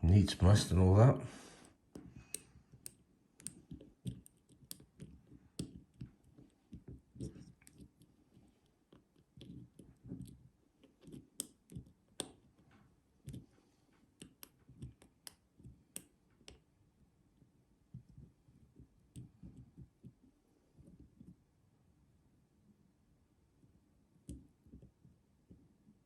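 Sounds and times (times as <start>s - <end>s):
lock pick clicking and scraping: 2.3s - 6.1s.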